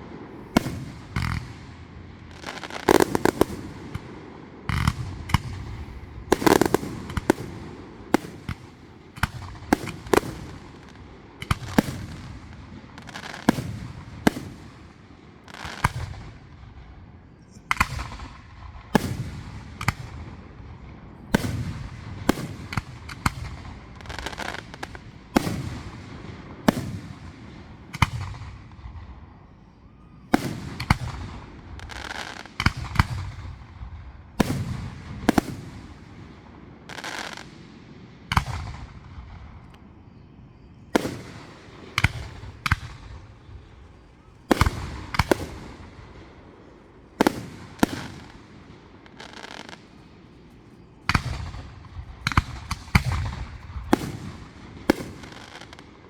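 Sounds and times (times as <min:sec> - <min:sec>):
fireworks bangs: 0:00.0 - 0:16.9, 0:17.7 - 0:56.0
fireworks rumble and crackle: 0:00.0 - 0:56.0.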